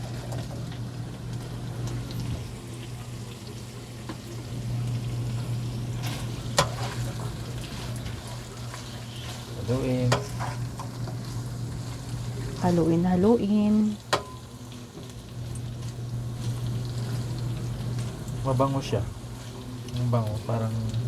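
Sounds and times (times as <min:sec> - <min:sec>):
food sizzling in a pan: 0:00.0 - 0:21.0
spatula clacking against pan: 0:14.1 - 0:14.4.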